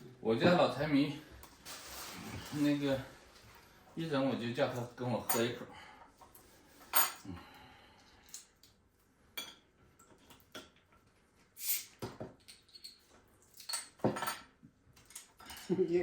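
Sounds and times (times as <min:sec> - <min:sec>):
tableware clinking: 0:06.8 - 0:07.2, 0:09.4 - 0:10.7, 0:12.4 - 0:14.6, 0:15.2 - 0:15.8.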